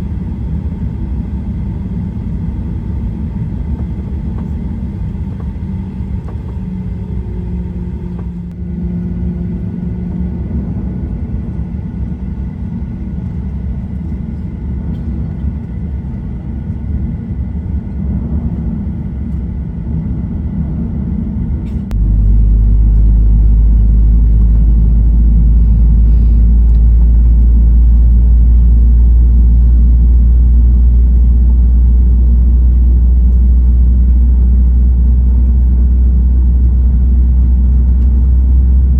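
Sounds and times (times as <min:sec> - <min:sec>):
jet engines rumbling: 0:00.0 - 0:38.9.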